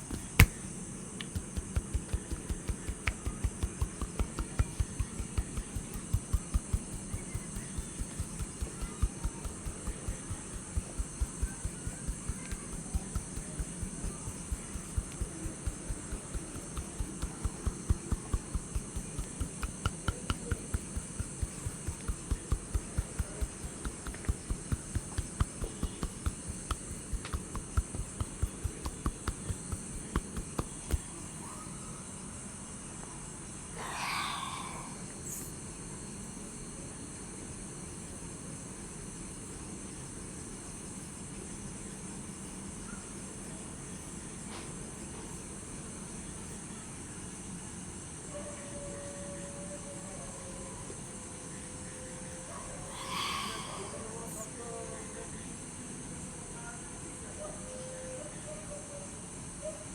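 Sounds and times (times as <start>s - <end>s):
soft thumps of hand-tapping massage: 0.0s - 31.4s
crickets chirring: 0.0s - 59.9s.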